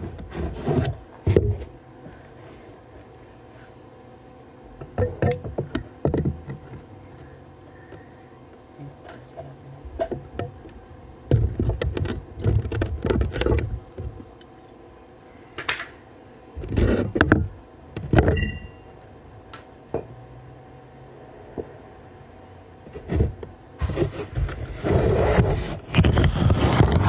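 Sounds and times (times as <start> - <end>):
electrical hum: 0.0 - 27.0.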